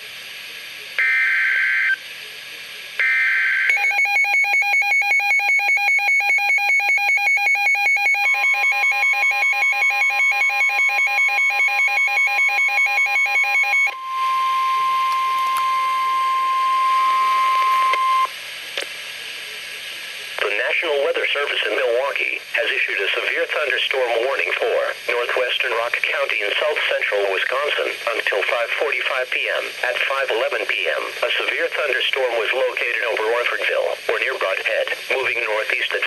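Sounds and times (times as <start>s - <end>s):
steady warning alarm tone: 1.0s - 2.0s, 3.0s - 18.3s
rapid pulsing alarm beep: 3.0s - 18.3s.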